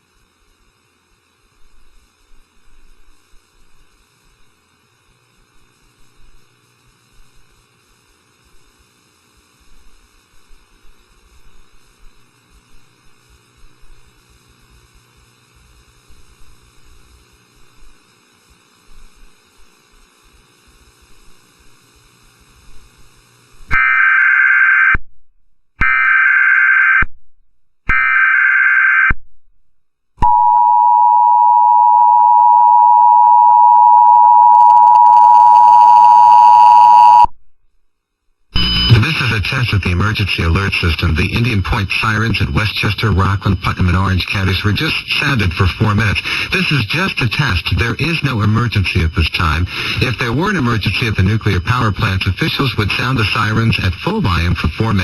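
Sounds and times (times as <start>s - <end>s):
two-tone attention signal: 30.2s - 37.3s, 38.6s - 39.4s
screeching data bursts: 38.6s - 53.9s.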